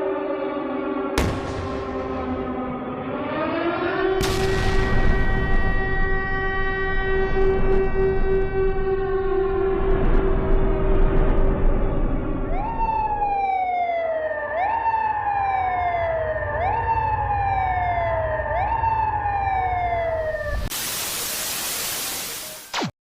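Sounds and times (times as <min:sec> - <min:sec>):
wailing emergency siren: 0:00.0 - 0:20.7
low rumble: 0:04.2 - 0:13.3
loud static hiss: 0:20.7 - 0:22.9.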